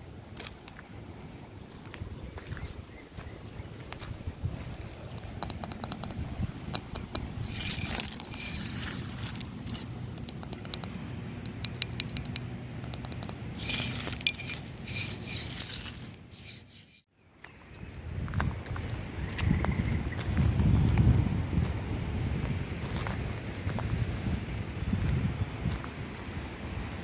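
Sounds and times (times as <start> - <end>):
footsteps crunching on dry ground: 1.6 - 5.4, 7.3 - 10.3, 13.6 - 26.0.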